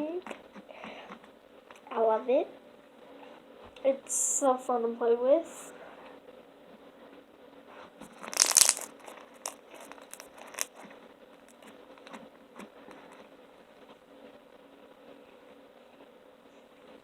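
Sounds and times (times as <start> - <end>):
slime crunching and crackling: 8.0 - 13.2.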